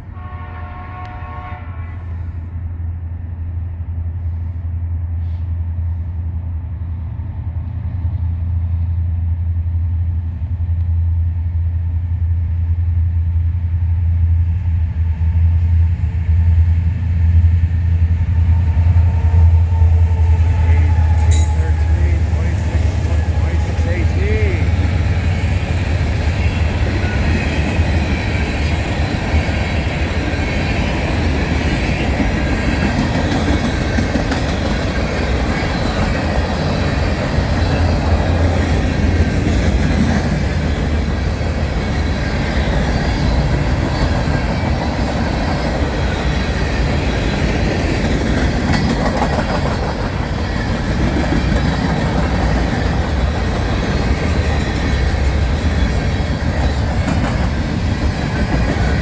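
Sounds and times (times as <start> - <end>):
train wheels rumbling on rails: 0.0 - 59.0
clickety-clack over rail joints: 18.2 - 59.0.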